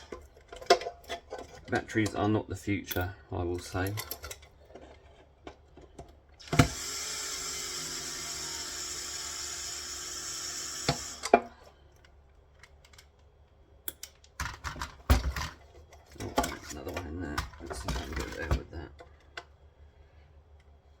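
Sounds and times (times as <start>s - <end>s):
cordless drill motor running: 6.4s - 11.3s.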